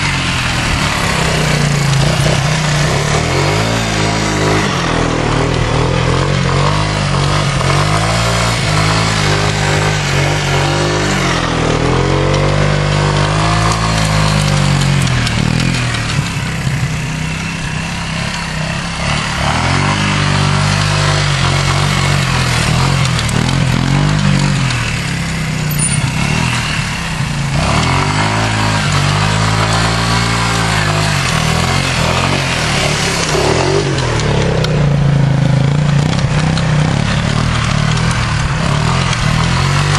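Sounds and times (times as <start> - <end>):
steady rushing hiss: 0.0 - 19.4
atv engine revving: 0.0 - 39.9.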